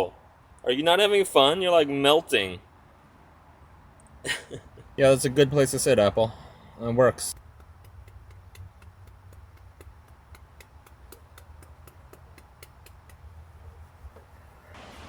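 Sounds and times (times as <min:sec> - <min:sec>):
faint ticking: 0:07.3 - 0:14.2.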